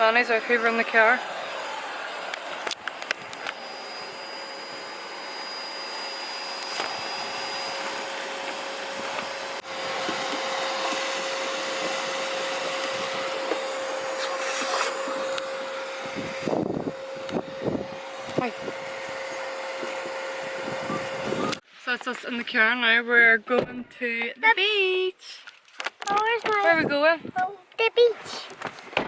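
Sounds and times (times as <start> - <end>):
vacuum cleaner running: 0.0 - 21.6.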